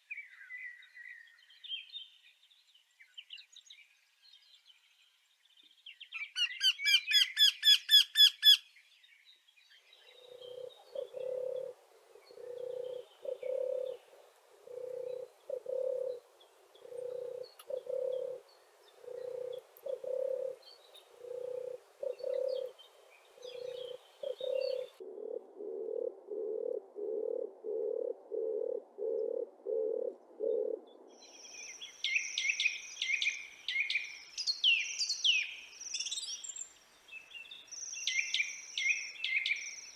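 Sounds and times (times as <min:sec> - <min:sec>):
bird twittering song: 0:00.0 - 0:14.1, 0:14.7 - 0:25.0, 0:30.5 - 0:39.9
low hollow bird hoots: 0:10.0 - 0:31.2
high bird chirping: 0:23.4 - 0:25.0.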